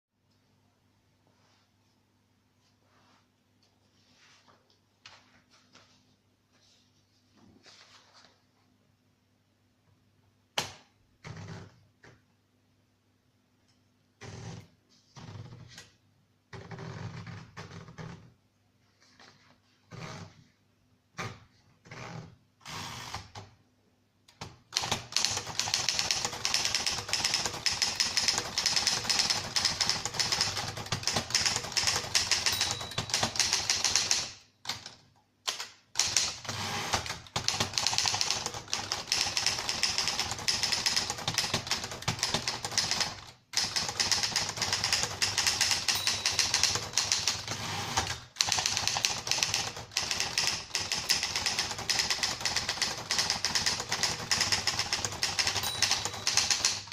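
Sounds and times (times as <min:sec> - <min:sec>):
manual typewriter typing: 0:24.4 - 0:56.9.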